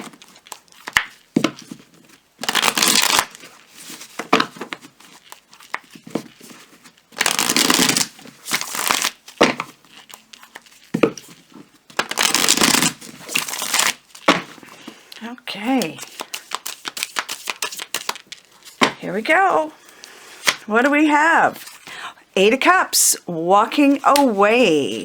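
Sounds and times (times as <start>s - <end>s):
cards being shuffled: 0.0s - 19.0s, 19.9s - 20.7s
deck tapping and clicking: 15.8s - 19.0s.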